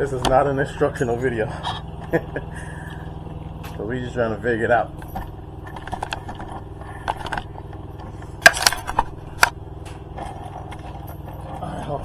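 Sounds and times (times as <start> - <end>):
steady low hum: 0.0 - 12.0
plastic clips clicking and scraping: 8.4 - 9.6.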